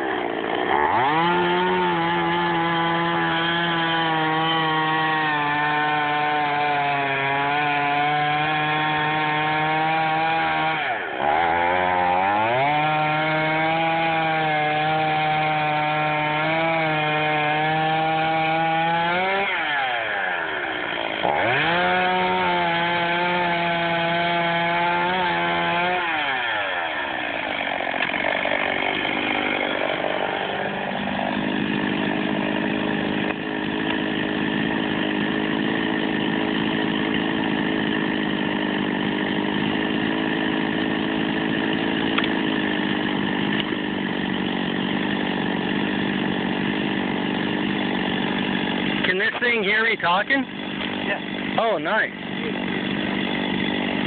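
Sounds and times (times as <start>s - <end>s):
chainsaw cutting a tree: 0.0s - 54.0s.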